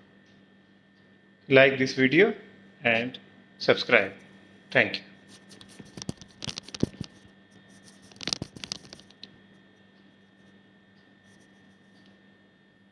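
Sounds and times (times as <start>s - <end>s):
faint electrical hum: 0.0s - 12.9s
clicks and scratching: 5.3s - 9.3s.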